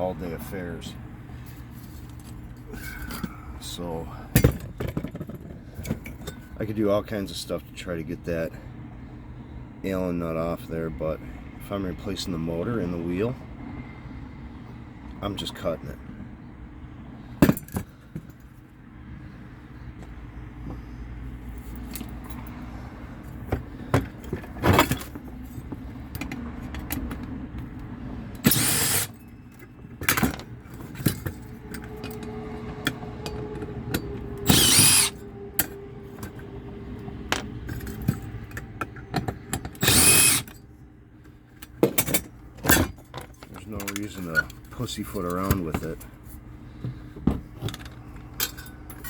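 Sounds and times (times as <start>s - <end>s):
power tool cutting metal: 28.4s - 29.2s, 34.0s - 35.7s, 39.8s - 40.6s.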